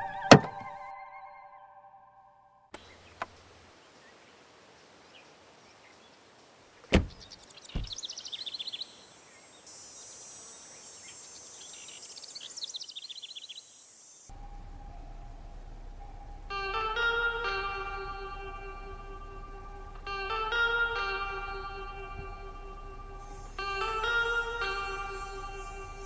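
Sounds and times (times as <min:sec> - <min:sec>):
faint hiss: 0:02.8 - 0:26.0
heavy thuds: 0:06.9 - 0:07.2, 0:07.8 - 0:08.0
bird-like chirping trills: 0:06.9 - 0:26.0
guitar music: 0:14.4 - 0:26.0.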